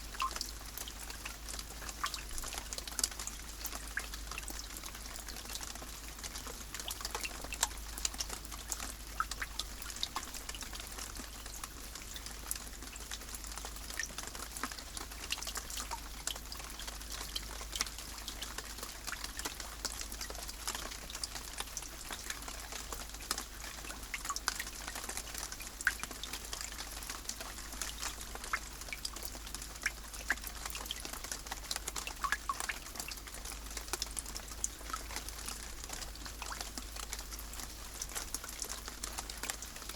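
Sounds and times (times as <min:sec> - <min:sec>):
steady rain: 0:00.0 - 0:39.9.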